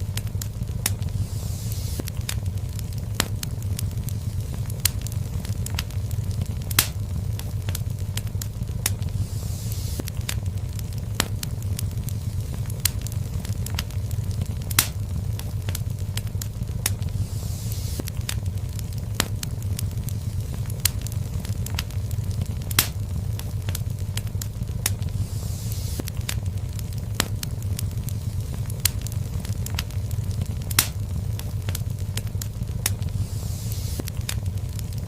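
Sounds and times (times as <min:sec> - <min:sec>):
fire low rumble: 0:00.0 - 0:35.0
wood fire crackling and popping: 0:00.0 - 0:35.0.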